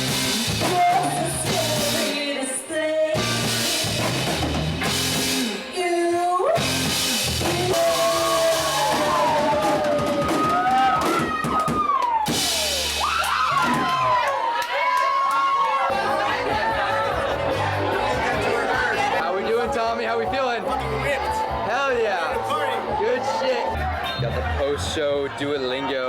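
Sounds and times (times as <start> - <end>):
drum kit: 0.0 - 2.3, 3.1 - 14.3
rock band playing live: 0.0 - 2.3, 3.0 - 14.1, 15.9 - 19.2
person singing: 0.4 - 4.1, 5.4 - 10.6.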